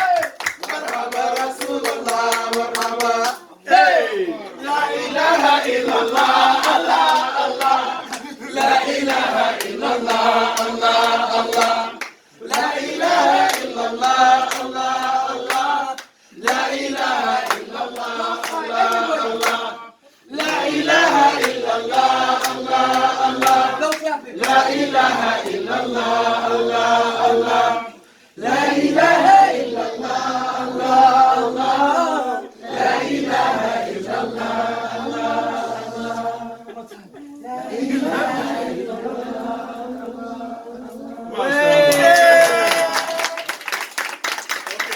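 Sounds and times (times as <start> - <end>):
hand claps: 0.0 - 3.5, 5.7 - 19.7, 20.3 - 24.8, 41.9 - 44.9
group singing a cappella: 0.6 - 43.2.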